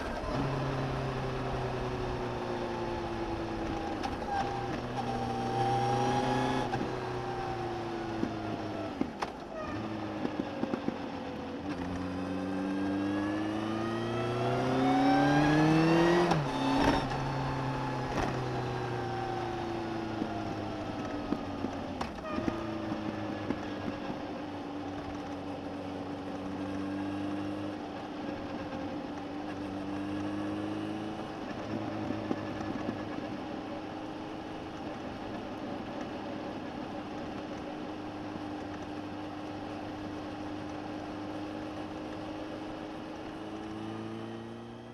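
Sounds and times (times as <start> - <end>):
motorcycle engine revving: 11.8 - 21.1.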